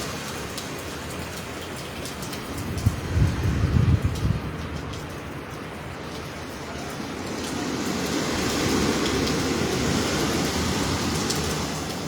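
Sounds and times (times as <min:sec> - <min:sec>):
hurricane wind and rain: 0:00.0 - 0:12.0
wind buffeting microphone: 0:02.4 - 0:05.5.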